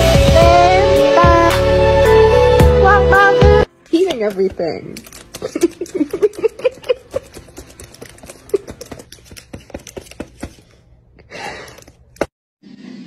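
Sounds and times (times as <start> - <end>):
pet crunching and chewing: 5.0 - 10.5.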